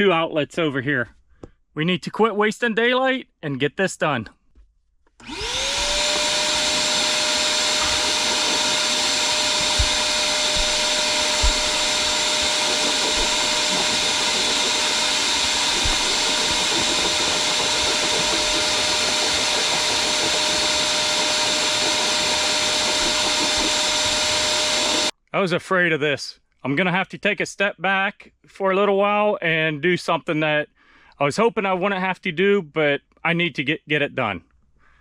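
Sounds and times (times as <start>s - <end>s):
vacuum cleaner motor whining: 5.2s - 25.1s.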